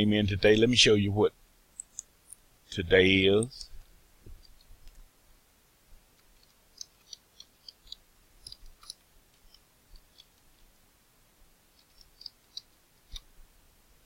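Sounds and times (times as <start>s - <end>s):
computer mouse clicks: 6.2s - 10.4s, 11.8s - 13.3s.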